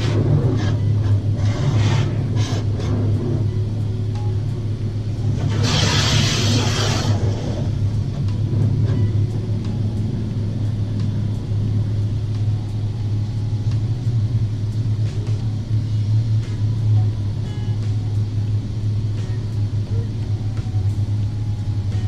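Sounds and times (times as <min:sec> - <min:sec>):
car engine idling: 0:00.0 - 0:22.0.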